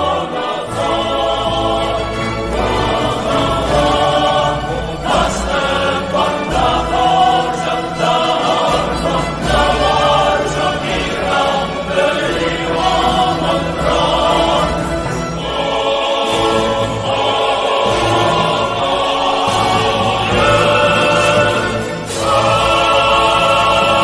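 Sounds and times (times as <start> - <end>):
choir singing held chords: 0.0 - 24.0.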